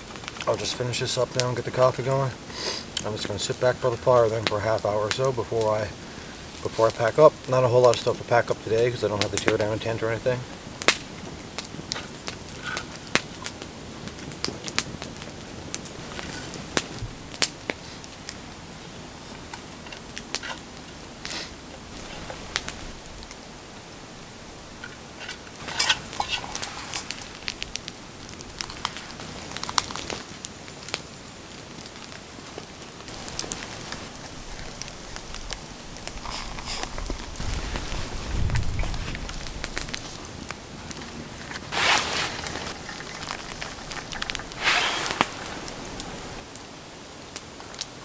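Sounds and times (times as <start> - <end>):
campfire crackling and popping: 0.0 - 48.0
hissing rushes: 24.4 - 30.1, 33.1 - 40.3, 41.2 - 46.5.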